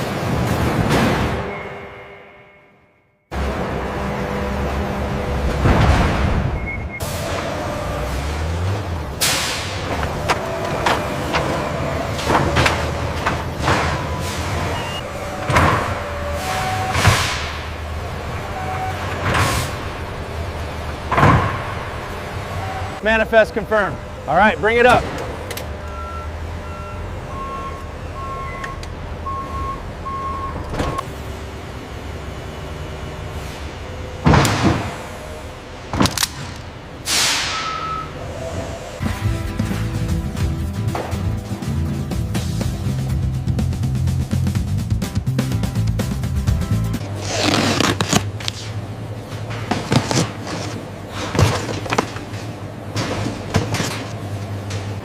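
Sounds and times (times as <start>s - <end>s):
backup alarm beeping: 1.4s - 3.0s, 6.5s - 7.1s, 13.6s - 17.2s, 25.8s - 31.1s, 37.5s - 38.2s
low hum of machinery: 3.3s - 39.0s, 47.0s - 55.0s
knocks clunks and clatter: 3.4s - 23.0s, 24.8s - 29.4s, 30.1s - 31.2s, 33.6s - 41.6s, 46.9s - 55.0s.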